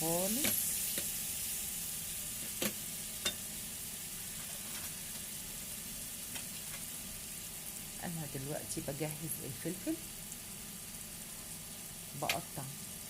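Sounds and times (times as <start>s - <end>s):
food sizzling in a frying pan: 0.0s - 13.0s.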